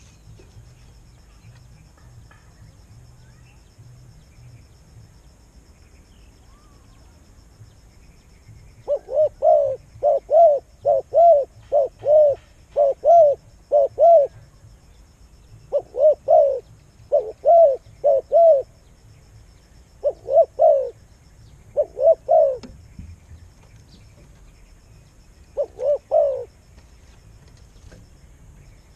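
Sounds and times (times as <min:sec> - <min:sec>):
bird calling: 0:08.7 - 0:14.5, 0:15.7 - 0:18.8, 0:19.9 - 0:27.2.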